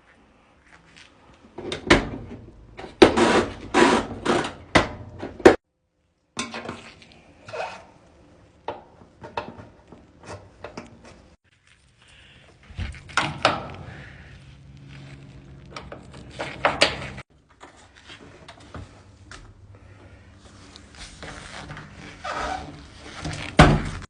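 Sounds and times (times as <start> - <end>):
hard parts knocking and scraping: 12.5 - 17.2.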